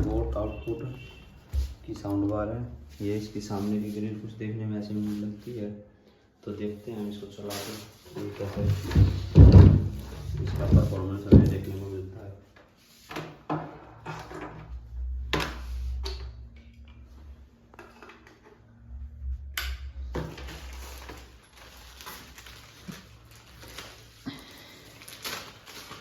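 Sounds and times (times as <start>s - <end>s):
low handling rumble: 18.5s - 22.1s
packaging being handled: 20.5s - 26.0s.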